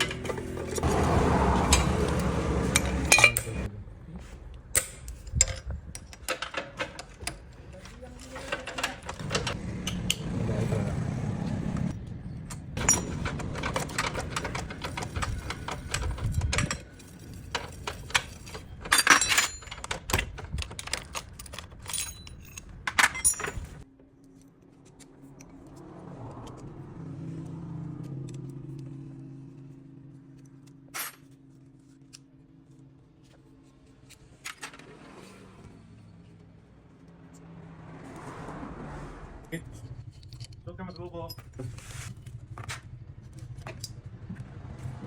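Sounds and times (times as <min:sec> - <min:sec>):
metal tools clinking: 0:00.0 - 0:03.7, 0:04.8 - 0:10.7, 0:12.2 - 0:23.8.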